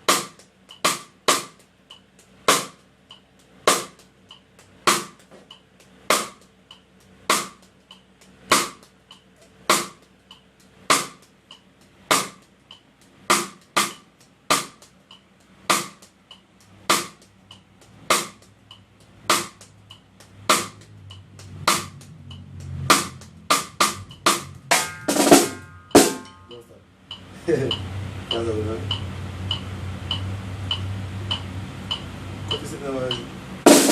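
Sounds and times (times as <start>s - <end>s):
high-tuned snare drum hits: 0.0s - 1.6s, 2.5s - 2.8s, 3.7s - 4.1s, 4.9s - 5.4s, 6.1s - 6.4s, 7.3s - 7.6s, 8.5s - 8.9s, 9.7s - 10.0s, 10.9s - 11.2s, 12.1s - 12.4s, 13.3s - 14.9s, 15.7s - 16.1s, 16.8s - 17.2s, 18.0s - 18.5s, 19.2s - 26.6s, 27.7s - 33.9s
low steady tone: 24.0s - 33.3s.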